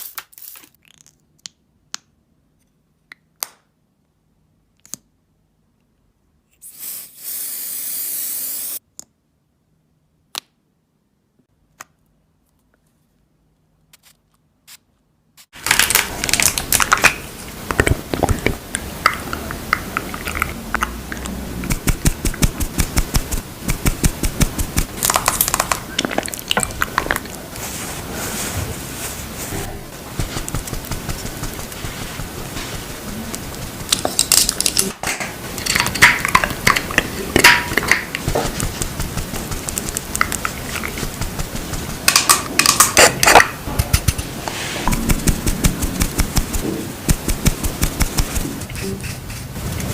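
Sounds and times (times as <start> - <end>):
spray bottle hissing: 6.6 - 8.8
makeup containers being handled: 25.0 - 27.4, 35.6 - 38.7.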